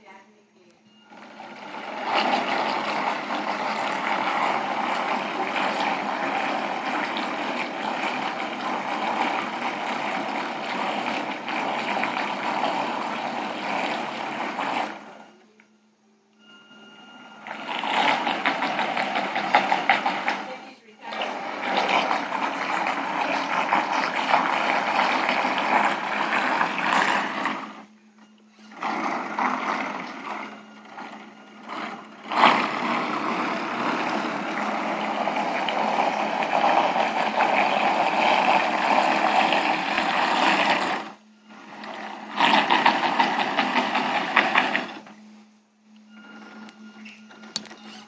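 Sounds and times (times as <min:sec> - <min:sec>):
faint steady hum: 0:00.0 - 0:18.2, 0:19.8 - 0:42.4, 0:44.1 - 0:48.0
model boat propellers churning water: 0:01.1 - 0:15.3, 0:17.3 - 0:27.9, 0:28.6 - 0:45.3.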